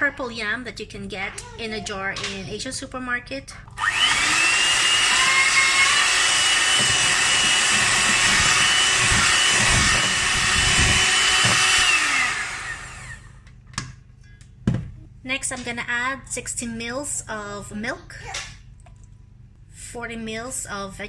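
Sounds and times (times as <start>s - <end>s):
electric hand mixer whining: 3.8s - 13.4s.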